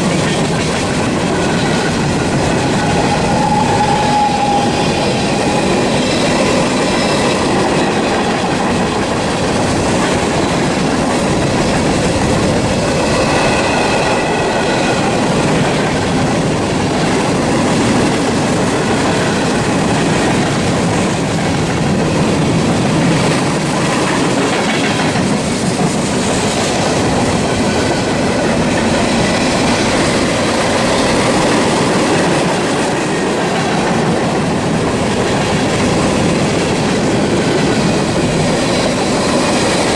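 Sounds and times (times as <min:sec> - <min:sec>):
train wheels clattering on rails: 0:00.0 - 0:39.9
wheels squealing: 0:02.6 - 0:07.3.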